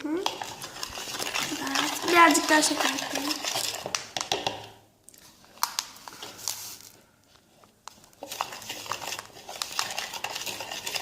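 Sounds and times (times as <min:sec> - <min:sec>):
spoon scraping: 0:00.2 - 0:04.0, 0:08.1 - 0:11.0.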